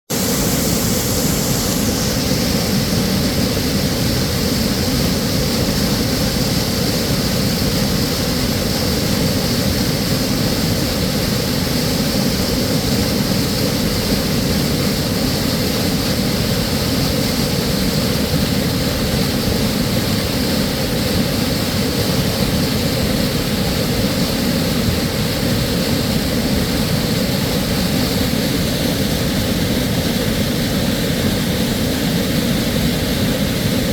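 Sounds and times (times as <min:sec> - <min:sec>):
creek water roaring: 0:00.1 - 0:33.9.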